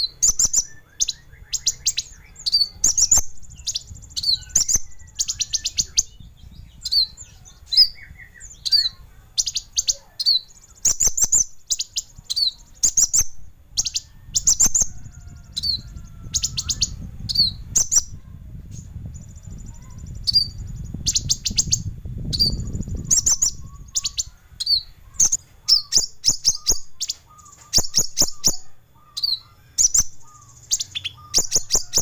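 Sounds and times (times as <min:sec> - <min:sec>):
bird singing high chirps and trills: 0:00.0 - 0:32.0.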